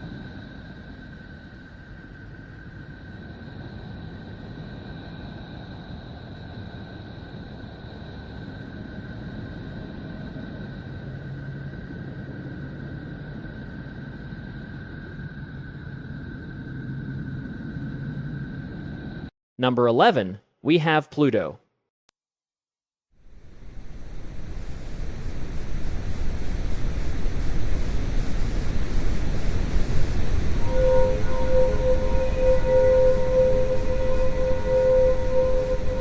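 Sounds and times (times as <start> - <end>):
steady rumbling noise: 0.0 - 19.3, 23.2 - 36.0
low hum: 23.3 - 36.0
faint high whistling tones: 27.6 - 36.0.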